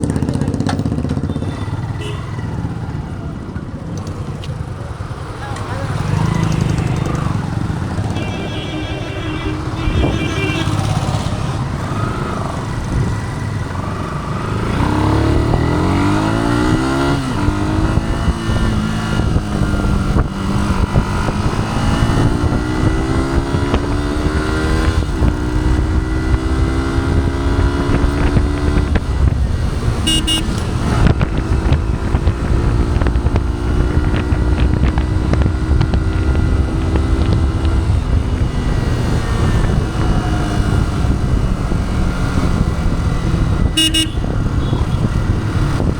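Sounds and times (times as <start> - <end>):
motorcycle engine accelerating: 0.0 - 45.9.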